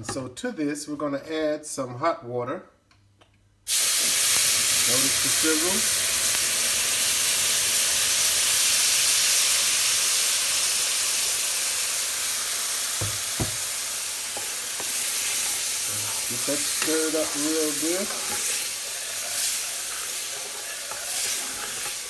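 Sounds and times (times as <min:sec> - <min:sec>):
water sizzling in hot skillet: 0:03.7 - 0:22.0
sharp knocks: 0:13.0 - 0:13.6.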